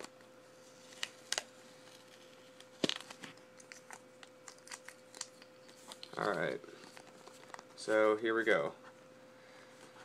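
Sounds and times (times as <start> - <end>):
packaging crinkling and tearing: 0.8 - 7.8.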